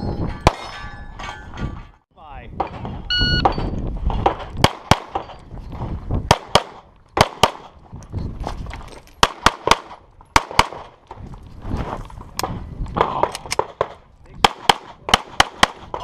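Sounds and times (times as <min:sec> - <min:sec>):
pistol shots: 0:06.3 - 0:07.8, 0:13.0 - 0:16.0.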